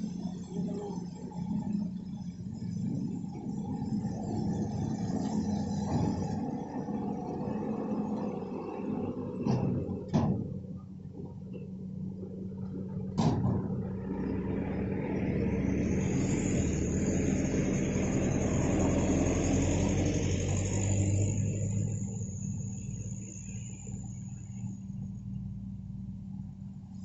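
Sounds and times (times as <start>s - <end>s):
excavator diesel engine running: 0.0s - 26.3s
high whine: 13.7s - 27.0s.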